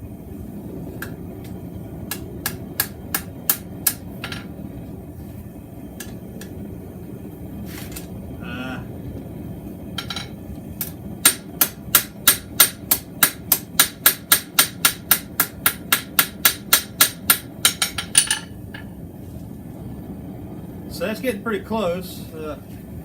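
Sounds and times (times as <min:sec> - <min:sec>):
hammer striking metal on anvil: 0:02.1 - 0:04.5, 0:10.0 - 0:18.5.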